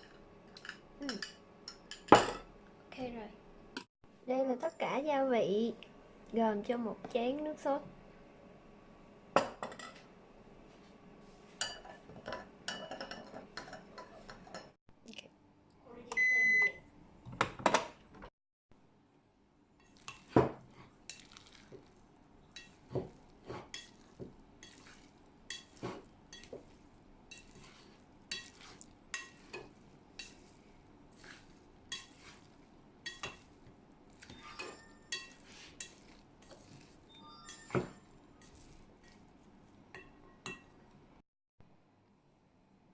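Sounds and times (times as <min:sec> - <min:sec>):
dishes and utensils clinking: 0:09.4 - 0:10.1, 0:11.6 - 0:14.8, 0:22.5 - 0:30.6, 0:31.2 - 0:39.2, 0:39.9 - 0:40.8
short steady beep: 0:16.2 - 0:16.8.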